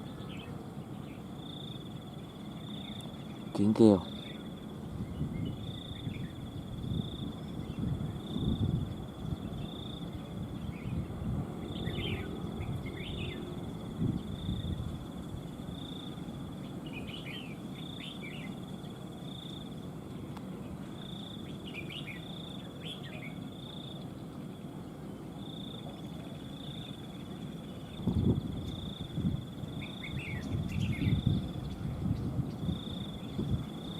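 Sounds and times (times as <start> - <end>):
high insect trill: 0.0 - 33.9
bird singing chirpy phrases: 2.4 - 6.4, 21.4 - 23.4, 29.8 - 33.4.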